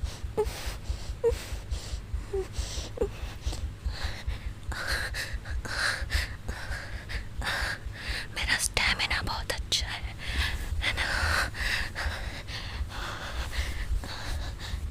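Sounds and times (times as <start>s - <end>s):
woman whimpering softly: 0.0s - 3.7s
woman breathing heavily: 0.0s - 8.6s, 9.9s - 14.9s.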